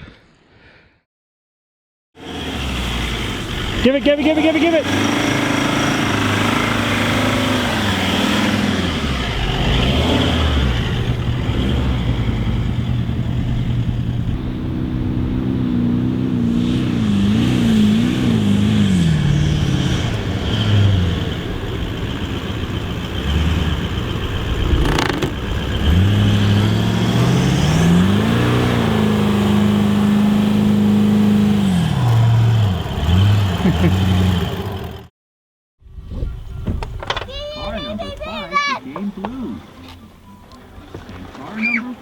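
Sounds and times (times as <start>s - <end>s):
car engine revving: 2.2s - 35.1s
sharp knock: 24.6s - 25.4s.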